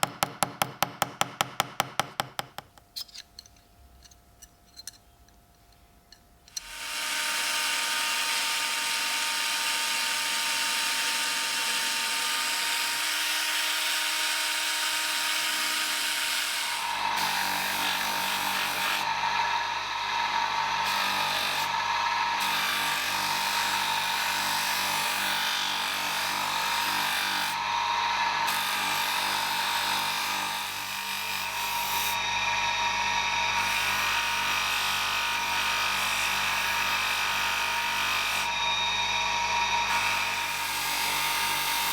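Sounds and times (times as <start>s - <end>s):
electric power tool running: 6.6s - 41.9s.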